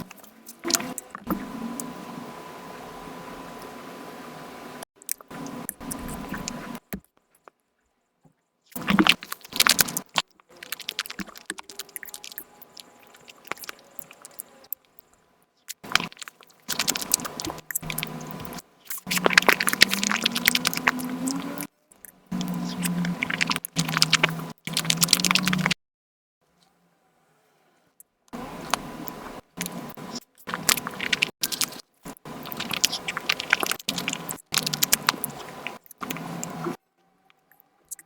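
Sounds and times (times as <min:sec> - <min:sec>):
sped-up crunching and chewing: 0:05.0 - 0:07.5, 0:08.7 - 0:25.8, 0:28.4 - 0:38.0.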